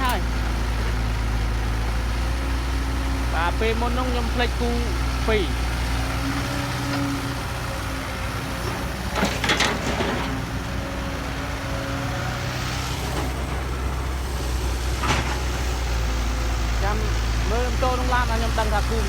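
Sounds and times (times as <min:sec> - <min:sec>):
heavy diesel engine running: 0:00.0 - 0:19.0
knocks and clatter: 0:08.8 - 0:10.5.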